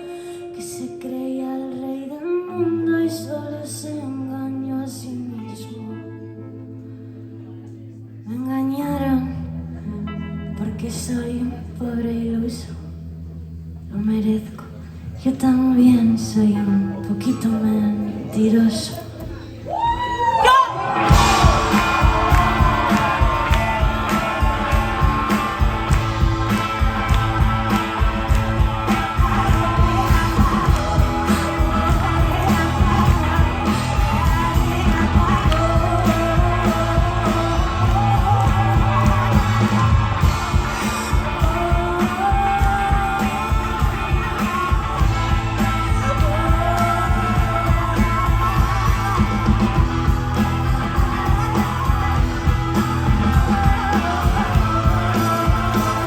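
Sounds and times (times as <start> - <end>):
rhythm guitar: 16.7 - 56.0
lead guitar bending pitch: 20.9 - 56.0
drum and bass groove: 21.0 - 56.0.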